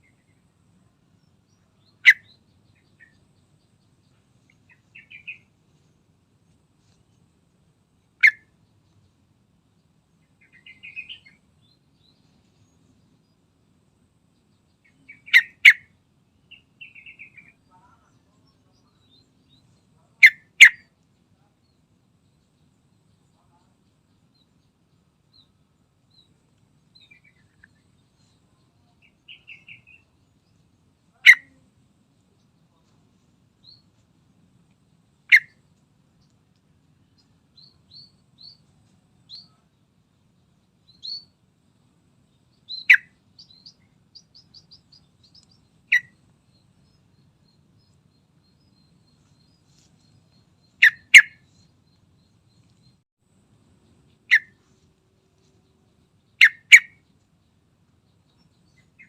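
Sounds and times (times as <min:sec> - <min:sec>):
bird soft high chirps: 0:01.6 - 0:03.2, 0:04.1 - 0:05.5, 0:10.4 - 0:13.0, 0:14.8 - 0:15.9, 0:40.9 - 0:41.4, 0:42.6 - 0:53.0
bird trills: 0:01.8 - 0:03.2, 0:04.5 - 0:05.5, 0:08.2 - 0:08.6, 0:10.4 - 0:11.4, 0:14.8 - 0:18.1, 0:20.2 - 0:20.9, 0:27.0 - 0:30.1, 0:31.1 - 0:31.6, 0:35.3 - 0:35.6, 0:40.9 - 0:41.4, 0:42.7 - 0:52.7, 0:54.1 - 0:54.8, 0:55.6 - 0:57.1.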